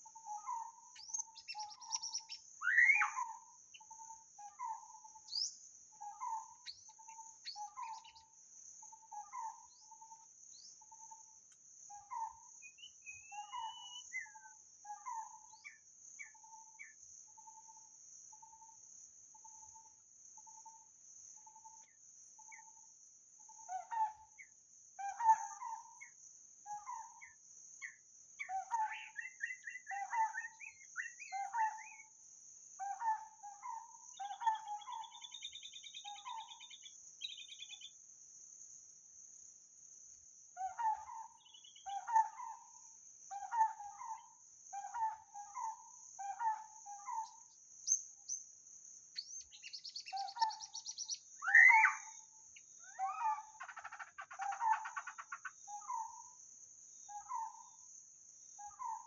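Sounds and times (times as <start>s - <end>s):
high insect drone: 0.0s - 59.0s
bird singing whistled phrases: 1.0s - 3.4s, 12.7s - 14.4s, 28.9s - 32.0s, 49.2s - 52.2s.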